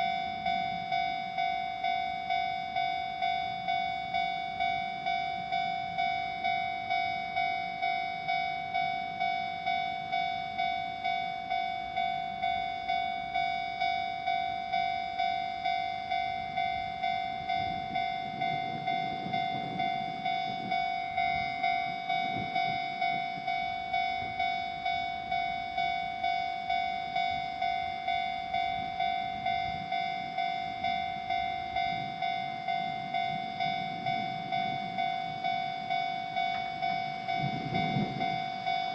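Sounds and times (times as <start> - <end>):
level-crossing warning bell: 0.0 - 38.9
train rumble: 0.0 - 38.9.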